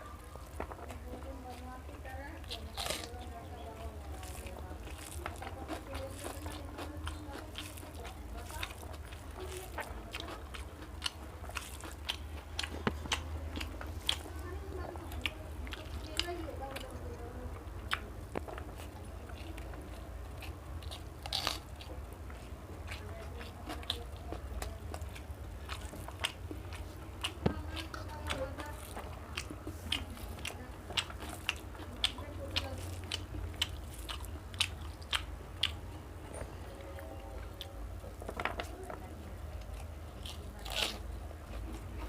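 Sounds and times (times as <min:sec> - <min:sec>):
person chewing food: 0:00.0 - 0:42.0
steady low hum: 0:00.0 - 0:42.0
crisp crunches: 0:02.4 - 0:17.0, 0:18.3 - 0:21.9, 0:40.2 - 0:41.9.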